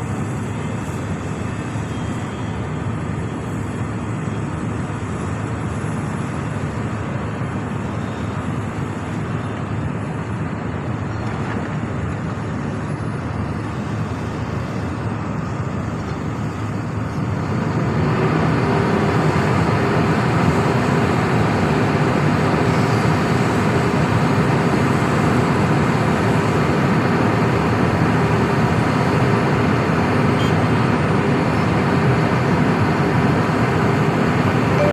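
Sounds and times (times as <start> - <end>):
heavy diesel engine running: 0.0 - 34.9.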